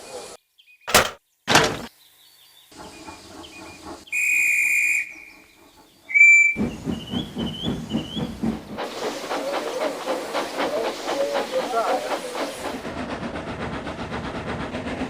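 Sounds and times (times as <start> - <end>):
steam engine chuffing: 6.6 - 15.0.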